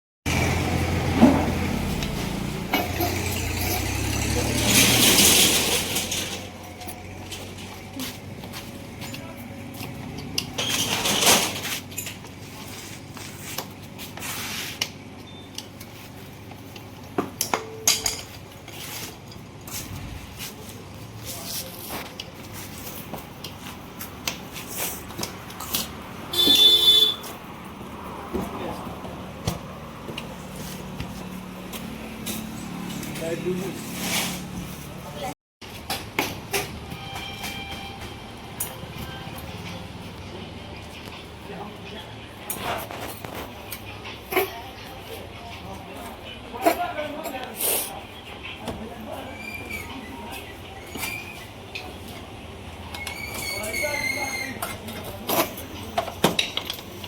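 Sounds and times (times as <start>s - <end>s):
loud buzzing horn: 26.3s - 27.3s.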